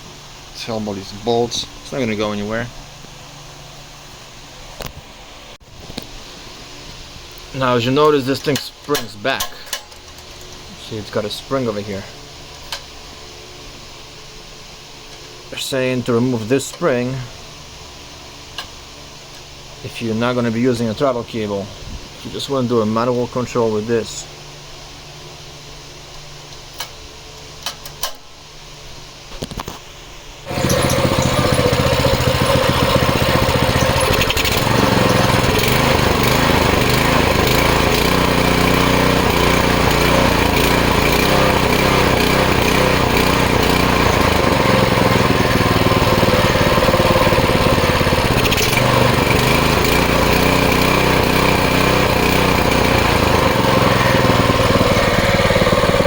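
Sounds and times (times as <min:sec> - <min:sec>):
pressure washer gas engine running: 0:30.5 - 0:56.0.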